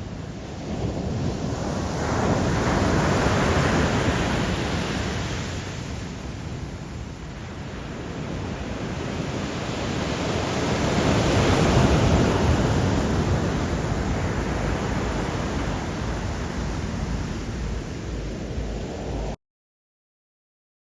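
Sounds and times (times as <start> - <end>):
wave breaking on shore: 7.8 - 19.4.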